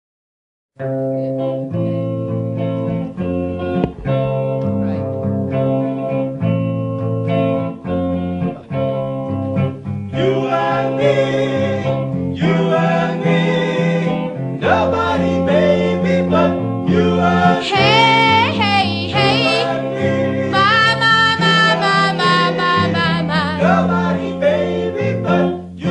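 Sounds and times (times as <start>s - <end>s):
plucked guitar song: 0.8s - 25.9s
person singing: 17.2s - 24.4s.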